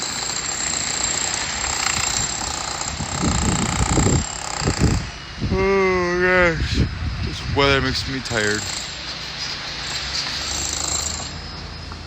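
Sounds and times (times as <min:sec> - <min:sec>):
power chisel hammering concrete: 0:00.0 - 0:05.2, 0:08.2 - 0:09.1, 0:09.8 - 0:11.4.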